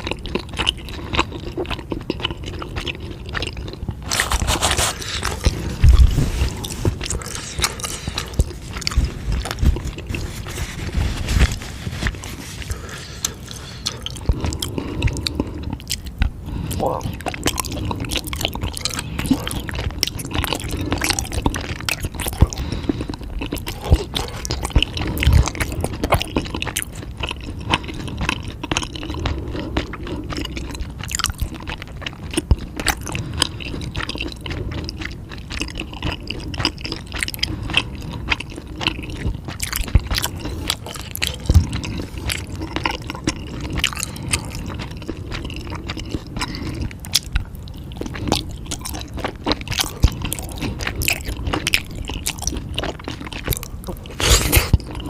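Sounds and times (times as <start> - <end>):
chewing and biting food: 0.0 - 55.0
wet mouth sounds: 0.0 - 55.0
sharp clicks and crunches: 3.9 - 17.6.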